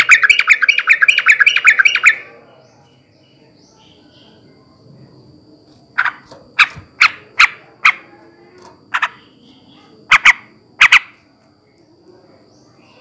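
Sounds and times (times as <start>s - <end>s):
bird giving harsh call notes: 0.0s - 2.3s.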